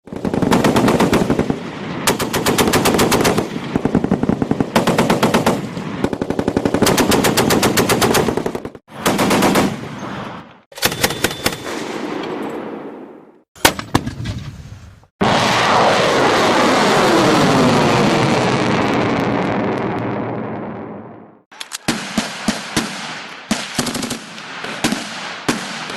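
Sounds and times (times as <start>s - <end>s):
machine-gun fire: 0.1s - 9.9s, 21.8s - 25.9s.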